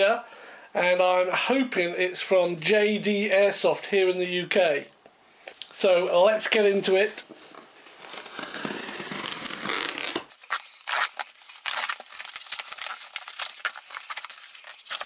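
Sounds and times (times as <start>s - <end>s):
cardboard tearing: 8.0s - 15.0s
packing crackling and rustling: 10.3s - 15.0s.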